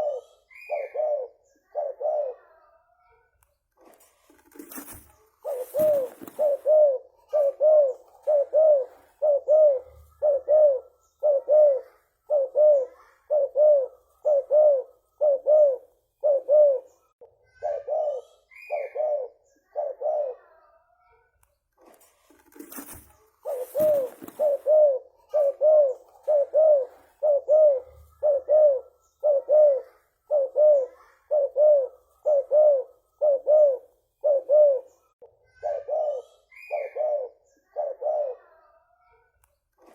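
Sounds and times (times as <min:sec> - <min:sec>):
dove cooing: 0:00.0 - 0:02.7, 0:04.4 - 0:20.7, 0:22.5 - 0:38.8
brief rustle: 0:03.7 - 0:06.6, 0:21.8 - 0:24.6.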